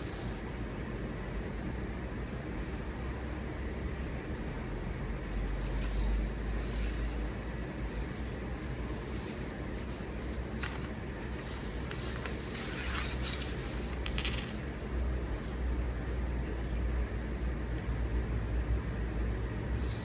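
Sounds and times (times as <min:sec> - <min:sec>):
low background rumble: 0:00.0 - 0:20.0
paper rustling: 0:05.6 - 0:14.7.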